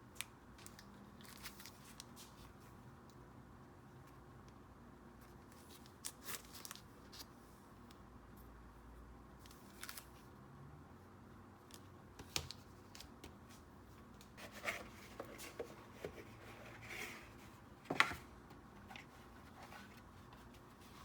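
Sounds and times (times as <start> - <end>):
paper rustling: 14.4 - 21.0.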